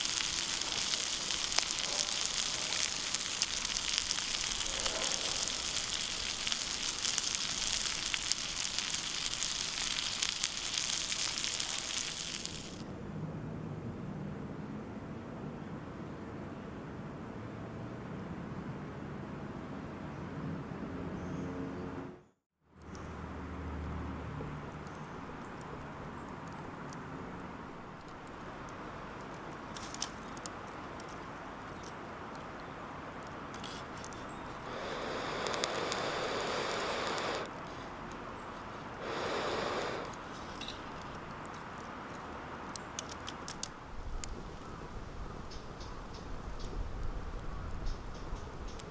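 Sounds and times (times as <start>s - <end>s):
food sizzling in a skillet: 0.0s - 12.8s, 34.7s - 37.5s
wood fire crackling: 0.0s - 12.9s, 25.6s - 44.7s.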